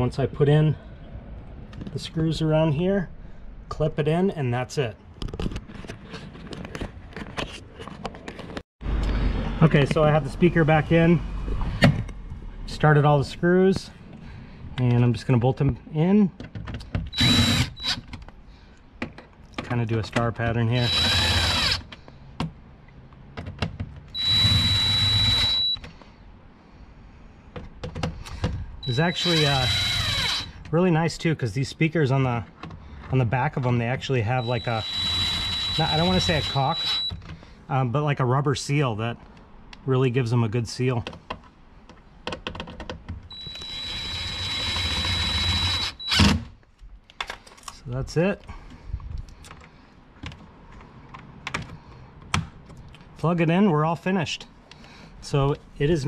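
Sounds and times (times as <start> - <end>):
power drill whining: 17.1 - 18.0, 20.8 - 21.9, 24.2 - 25.8, 28.8 - 30.6, 34.4 - 37.2, 43.3 - 46.4.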